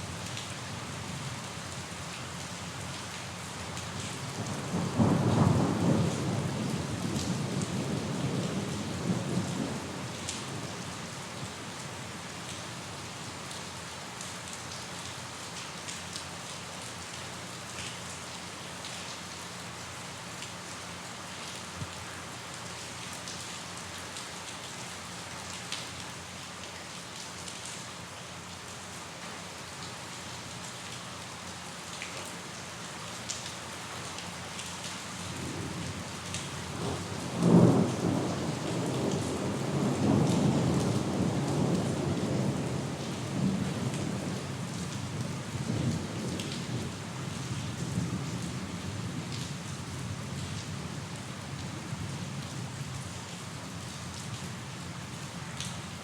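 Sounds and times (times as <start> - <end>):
steady rain: 0.0 - 56.0.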